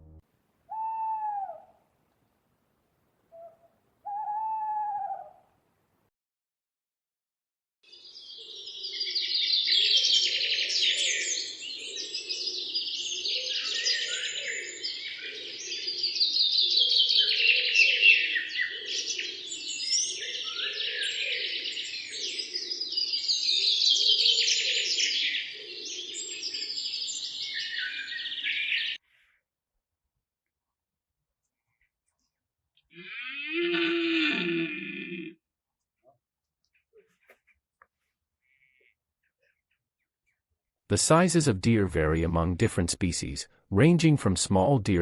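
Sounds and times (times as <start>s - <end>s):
low pulsing call: 0.0s - 1.8s
birds chirping and trilling: 7.9s - 29.0s.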